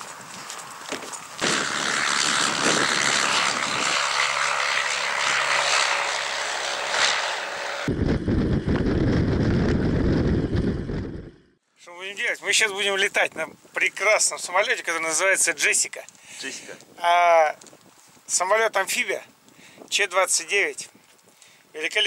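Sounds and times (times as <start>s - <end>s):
propeller aircraft engine: 0.0s - 11.6s
heavy low rushing noise: 1.4s - 11.6s.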